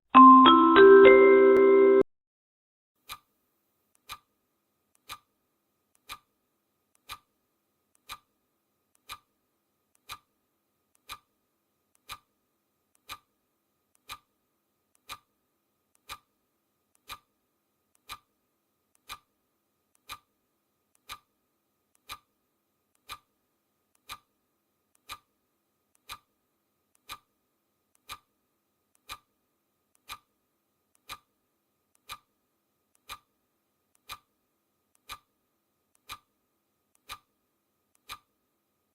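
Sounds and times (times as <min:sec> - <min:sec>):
clock ticking: 0:04.0 - 0:04.3, 0:05.0 - 0:05.3, 0:06.0 - 0:06.3, 0:07.0 - 0:07.3, 0:08.0 - 0:08.3, 0:09.0 - 0:09.3, 0:10.0 - 0:10.3, 0:11.0 - 0:11.3, 0:12.0 - 0:12.3, 0:13.0 - 0:13.3, 0:14.0 - 0:14.3, 0:15.0 - 0:15.3, 0:16.0 - 0:16.3, 0:17.0 - 0:17.3, 0:18.0 - 0:18.3, 0:18.9 - 0:19.3, 0:20.0 - 0:20.3, 0:20.9 - 0:21.3, 0:22.0 - 0:22.3, 0:23.0 - 0:23.3, 0:24.0 - 0:24.3, 0:25.0 - 0:25.3, 0:26.0 - 0:26.3, 0:27.0 - 0:27.3, 0:28.0 - 0:28.3, 0:29.0 - 0:29.3, 0:30.0 - 0:30.3, 0:31.0 - 0:31.3, 0:32.0 - 0:32.3, 0:33.0 - 0:33.3, 0:34.0 - 0:34.3, 0:35.0 - 0:35.3, 0:35.9 - 0:36.3, 0:36.9 - 0:37.3, 0:38.0 - 0:38.3.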